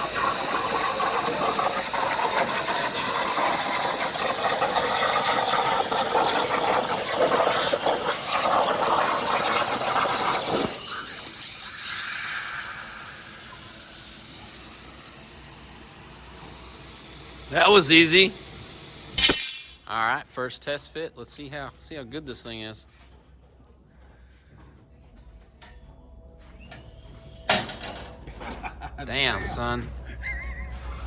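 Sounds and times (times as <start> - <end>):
hiss of air: 0.0 - 19.8
plasma cutter hissing: 0.0 - 19.9.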